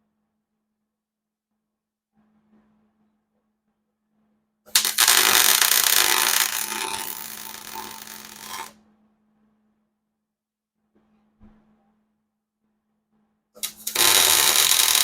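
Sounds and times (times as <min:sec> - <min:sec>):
welding arc crackling: 0:04.7 - 0:08.7, 0:13.6 - 0:15.0.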